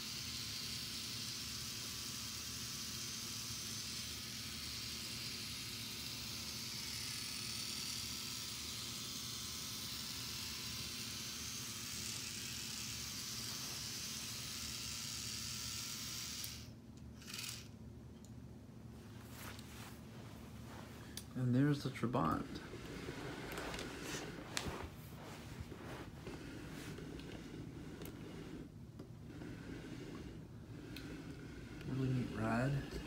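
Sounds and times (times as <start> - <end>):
whir of plastic gears: 0.0 - 17.8, 26.2 - 33.0.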